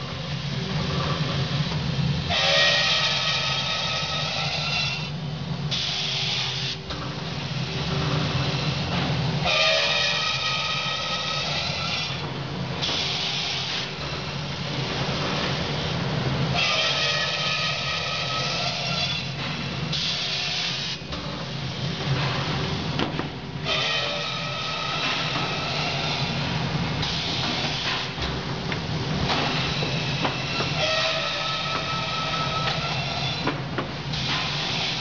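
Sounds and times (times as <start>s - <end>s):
circular saw screeching through metal: 2.3s - 5.2s, 9.4s - 12.2s, 16.5s - 19.4s, 23.6s - 26.4s, 29.6s - 33.4s.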